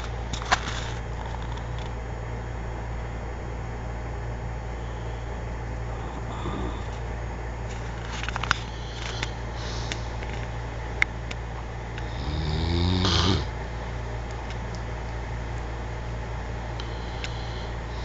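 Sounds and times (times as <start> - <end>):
steady low hum: 0.0 - 18.0
person snoring: 5.9 - 7.0, 12.0 - 13.5, 16.9 - 18.0.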